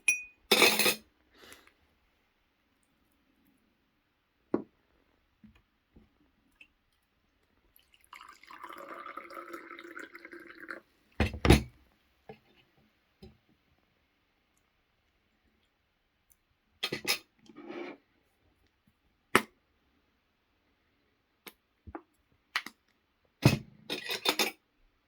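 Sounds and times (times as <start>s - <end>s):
liquid pouring into container: 7.7s - 10.9s.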